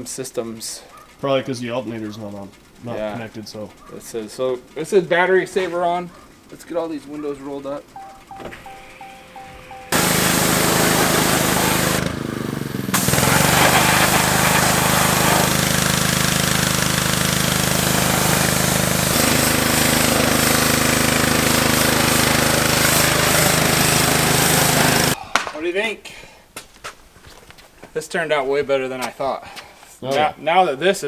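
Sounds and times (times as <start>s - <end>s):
small gas engine running: 9.0s - 25.2s.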